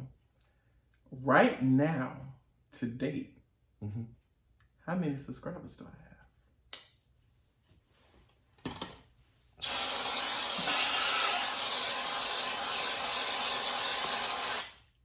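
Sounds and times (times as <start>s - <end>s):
spray hissing: 9.6s - 14.8s.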